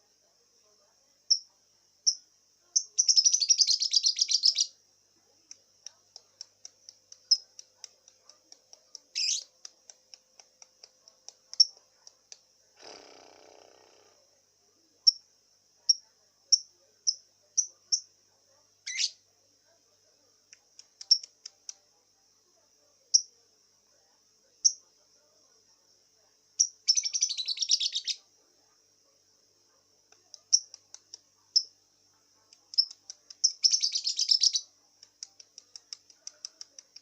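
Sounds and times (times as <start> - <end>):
bird chirping and chattering: 2.8 - 4.7, 6.1 - 11.8, 18.8 - 19.2, 20.8 - 21.8, 26.6 - 28.2, 32.6 - 37.0.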